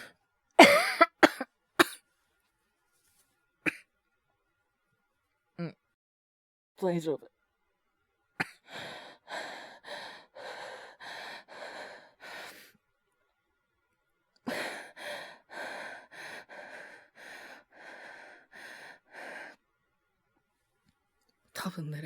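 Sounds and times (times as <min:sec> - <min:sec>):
man breathing heavily and rapidly: 0:08.6 - 0:12.8, 0:14.5 - 0:19.6.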